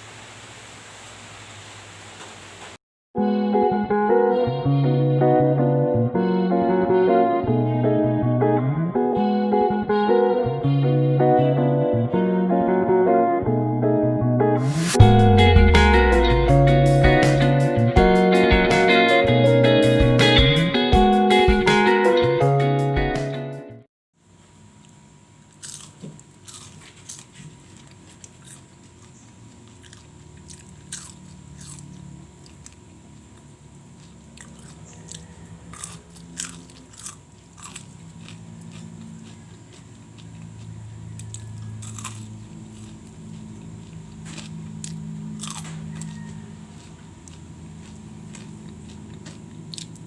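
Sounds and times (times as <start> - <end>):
low steady hum: 24.2 - 50.0
crunchy food being chewed: 24.8 - 50.0.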